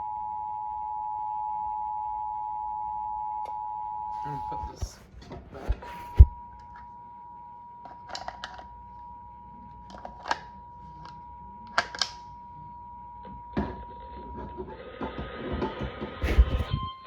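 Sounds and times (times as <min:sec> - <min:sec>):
faint steady tone: 0:00.0 - 0:04.8, 0:06.3 - 0:14.1.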